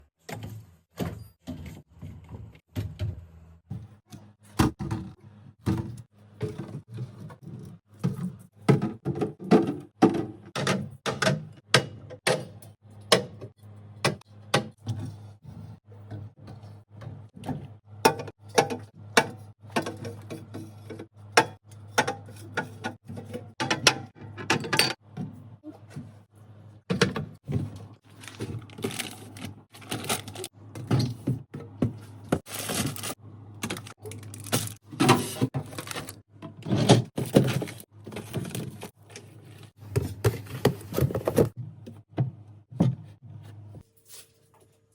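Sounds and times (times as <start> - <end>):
containers set down on shelves: 39.8 - 43.1.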